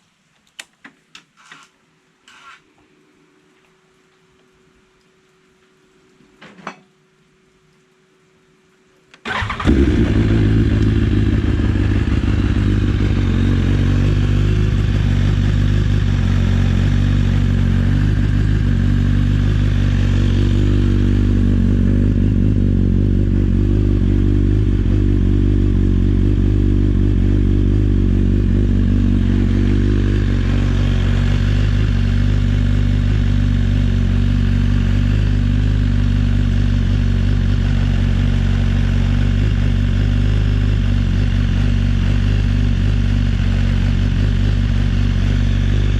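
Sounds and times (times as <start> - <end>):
motorcycle engine idling: 9.3 - 45.9.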